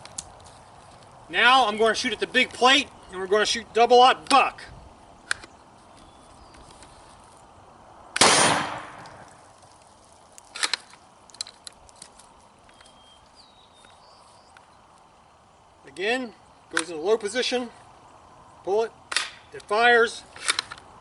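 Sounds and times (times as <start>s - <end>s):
shotgun blast with echo: 8.2s - 9.0s
sharp metallic clicks: 19.1s - 20.9s.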